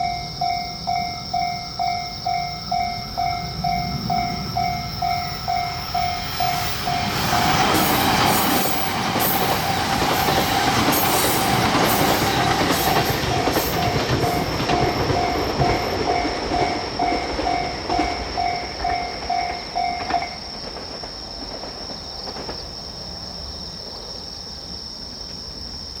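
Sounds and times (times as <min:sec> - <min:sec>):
level crossing alarm ringing: 0:00.0 - 0:20.4
train wheels clattering: 0:01.9 - 0:23.1.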